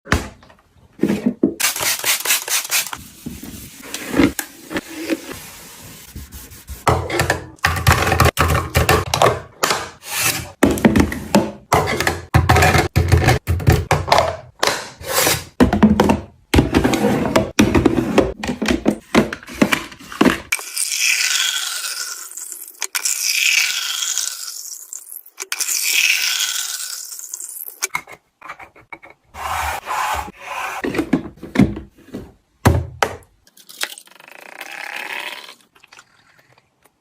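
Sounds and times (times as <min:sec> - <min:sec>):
items knocking on fridge shelves: 0:15.6 - 0:16.8, 0:30.8 - 0:33.2.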